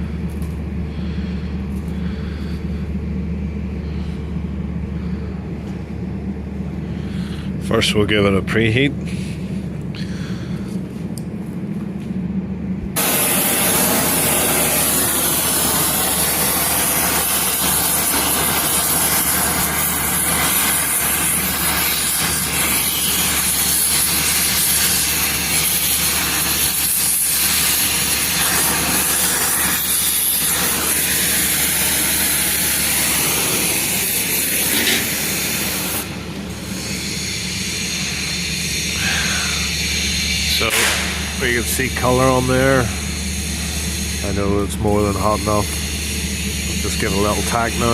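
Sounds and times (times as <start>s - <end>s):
steady low hum: 0.0s - 47.9s
gas torch flame hissing: 12.9s - 47.9s.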